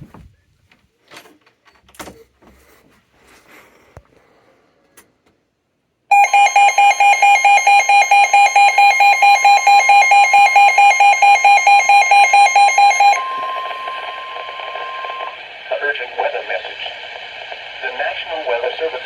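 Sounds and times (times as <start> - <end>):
fast pulsing alarm beeps: 6.1 - 15.4
steady warning tone: 6.1 - 19.0.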